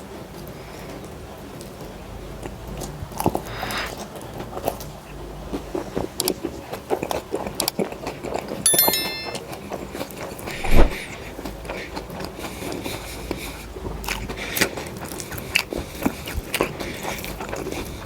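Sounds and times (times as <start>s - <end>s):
high chirp: 8.7s - 9.5s.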